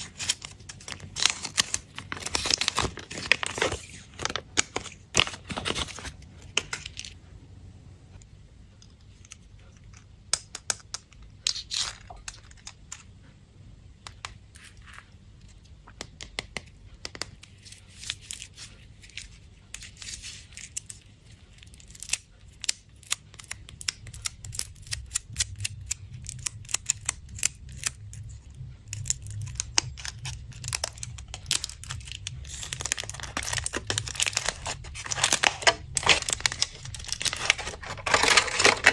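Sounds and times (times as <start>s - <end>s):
candy wrappers crinkling: 0.0s - 7.2s, 11.1s - 13.1s, 17.2s - 38.9s.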